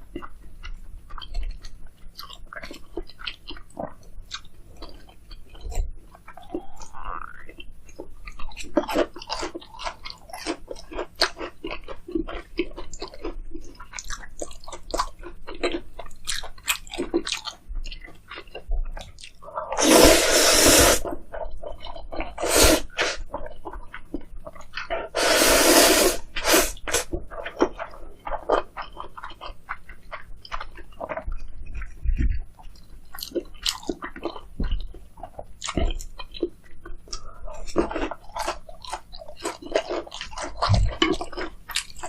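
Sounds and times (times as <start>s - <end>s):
chewing crunchy fried food: 0.0s - 42.0s
slurping noodles: 19.8s - 21.1s, 22.3s - 23.2s, 25.1s - 27.1s.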